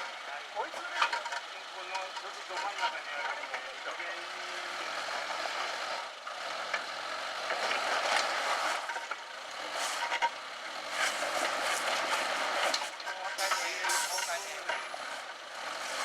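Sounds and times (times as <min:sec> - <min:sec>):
faint low engine hum: 0:00.0 - 0:16.0.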